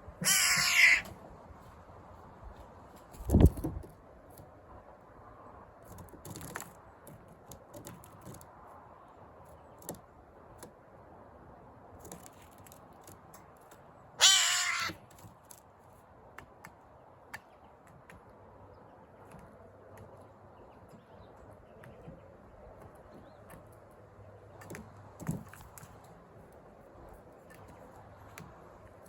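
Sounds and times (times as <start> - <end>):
jay harsh call: 0.2 - 1.1.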